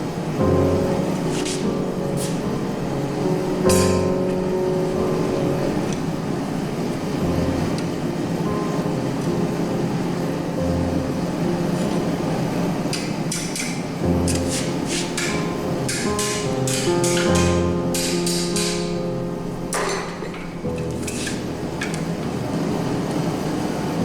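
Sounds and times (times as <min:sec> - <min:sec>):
background music with sustained notes: 0:00.0 - 0:24.0
hammer striking steel on anvil: 0:03.7 - 0:04.1, 0:12.9 - 0:19.0.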